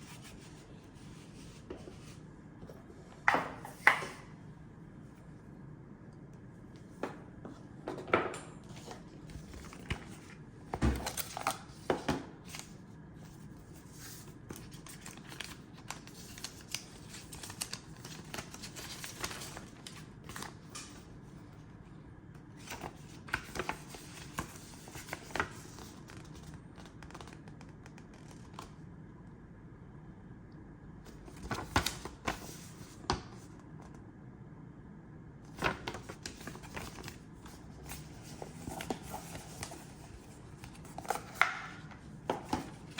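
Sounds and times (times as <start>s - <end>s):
cardboard and paper crinkling: 8.7s - 21.1s, 22.6s - 28.7s, 31.1s - 33.1s, 35.5s - 42.9s.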